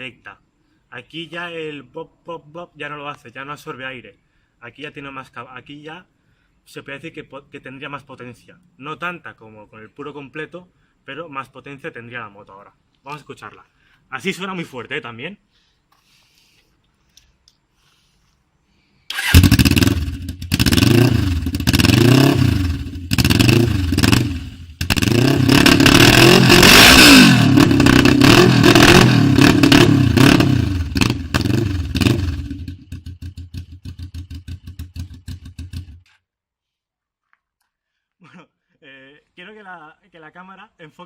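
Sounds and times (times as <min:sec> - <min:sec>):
motorcycle engine revving and idling: 0:19.1 - 0:36.1.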